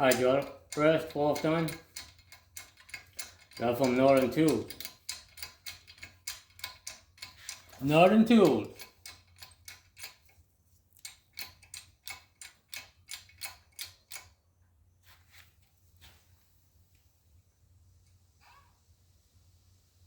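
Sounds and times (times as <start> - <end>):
hydraulic press pump clicking: 0.0 - 10.3.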